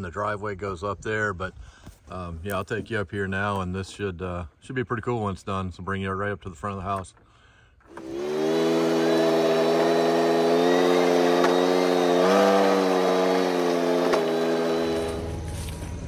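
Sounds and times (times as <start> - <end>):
vehicle engine running: 8.2 - 16.0.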